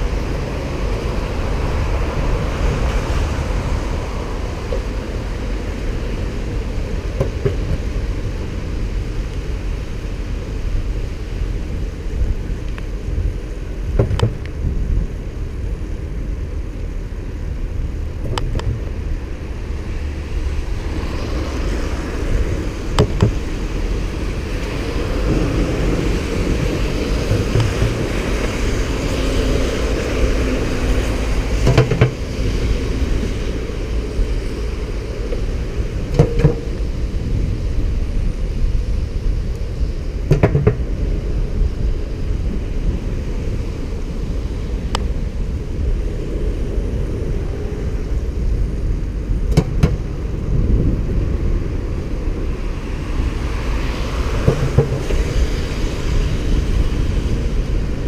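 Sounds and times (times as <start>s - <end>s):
bicycle road noise: 0.0s - 58.0s
wind rushing over microphone: 0.0s - 58.0s
bike knocking over bumps: 23.0s - 23.5s, 27.2s - 28.3s, 40.3s - 41.0s.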